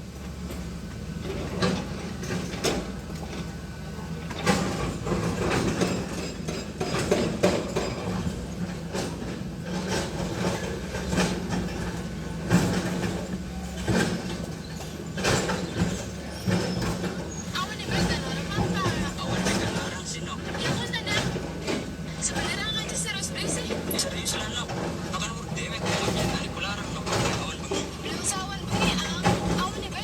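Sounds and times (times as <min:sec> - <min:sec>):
engine running steadily: 0:00.0 - 0:30.0
machinery clanks and knocks: 0:00.1 - 0:30.0.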